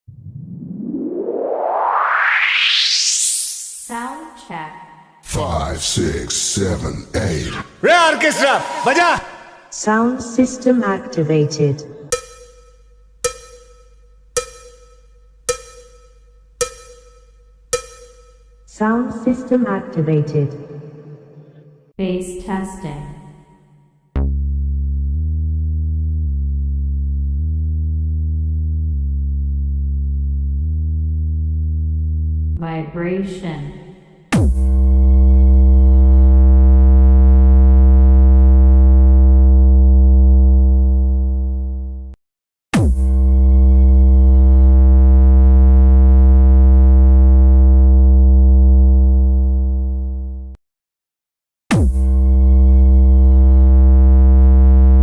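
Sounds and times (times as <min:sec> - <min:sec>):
low bass test tone: 0:12.1 - 0:18.7, 0:24.2 - 0:32.6, 0:34.4 - 0:42.1, 0:42.8 - 0:50.6.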